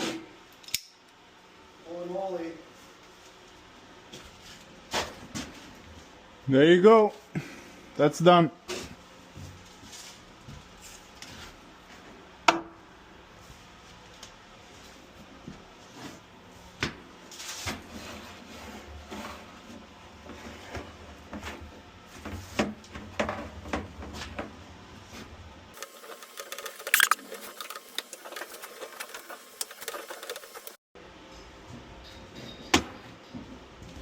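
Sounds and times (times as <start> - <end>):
parts rattling: 25.8 - 30.8.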